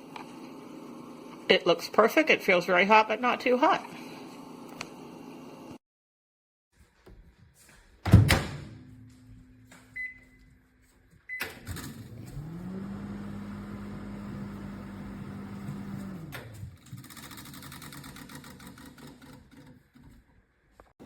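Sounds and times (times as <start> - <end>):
microwave oven humming: 11.3 - 16.5.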